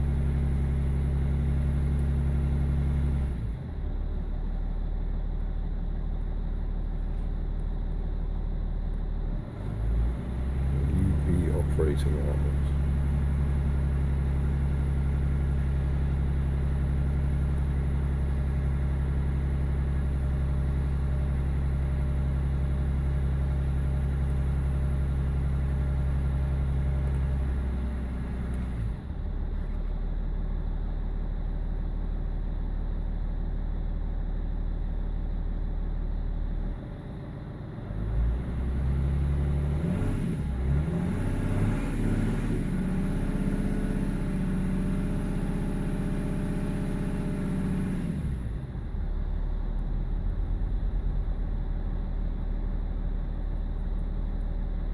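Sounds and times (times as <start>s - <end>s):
diesel engine idling unevenly: 3.4s - 26.9s.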